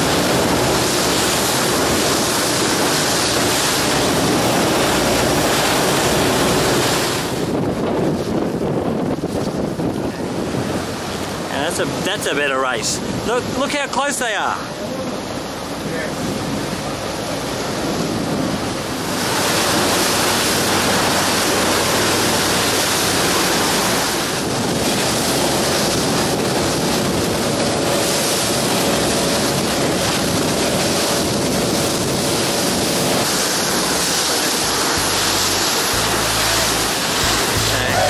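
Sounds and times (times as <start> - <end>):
water spray: 0.0 - 7.6, 18.9 - 38.0
wind rushing: 0.0 - 14.5, 15.2 - 38.0
wind buffeting microphone: 0.0 - 38.0.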